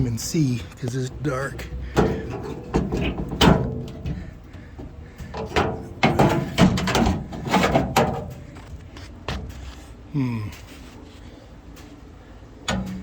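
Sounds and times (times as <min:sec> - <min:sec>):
knocks and rattling inside car door: 0:02.0 - 0:08.3.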